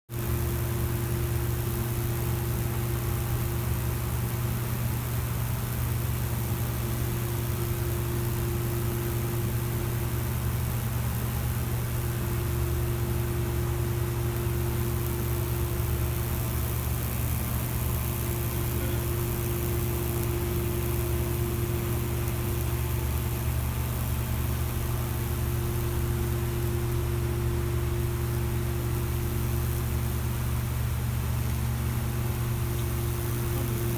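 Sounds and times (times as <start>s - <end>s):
transformer buzzing: 12.0s - 30.9s, 31.9s - 33.9s
continuous hiss: 13.7s - 33.9s.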